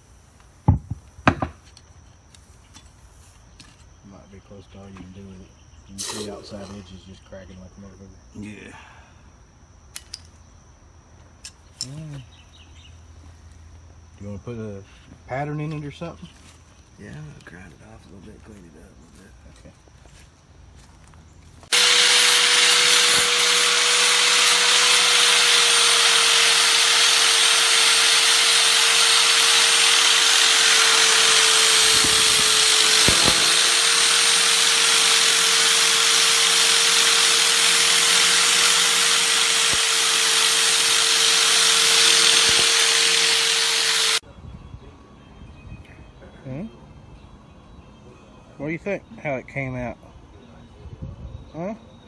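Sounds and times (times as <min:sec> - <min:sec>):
power grinder grinding metal: 0:21.7 - 0:44.2.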